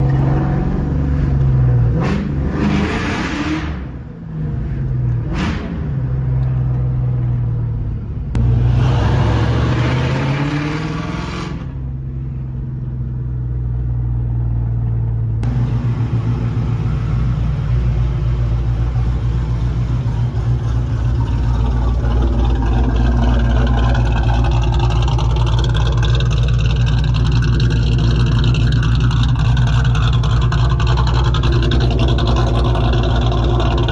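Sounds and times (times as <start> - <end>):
car engine revving: 0.0 - 7.0, 8.3 - 12.6, 15.3 - 33.9
car engine idling: 6.4 - 8.8, 11.7 - 33.9.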